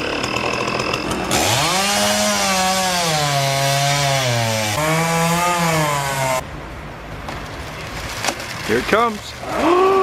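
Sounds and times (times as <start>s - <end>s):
chainsaw cutting wood: 0.0s - 6.4s.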